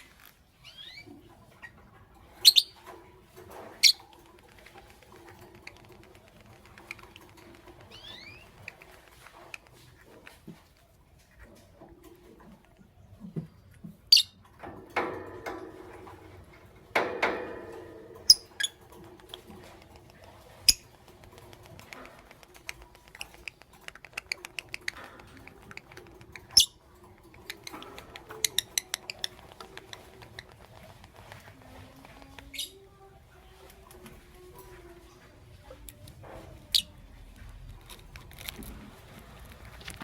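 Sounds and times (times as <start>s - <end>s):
lovebirds chirping: 0.0s - 1.8s, 2.4s - 2.8s, 4.8s - 9.8s, 22.7s - 30.7s, 31.6s - 33.5s
lovebird clicking and chittering: 2.4s - 2.9s, 3.8s - 9.9s, 18.2s - 32.8s.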